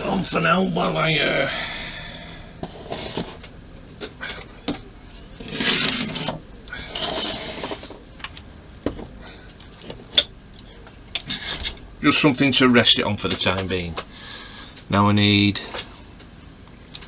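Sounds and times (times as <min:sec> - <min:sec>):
rustling scraping sounds: 0:02.6 - 0:03.5, 0:05.2 - 0:08.0.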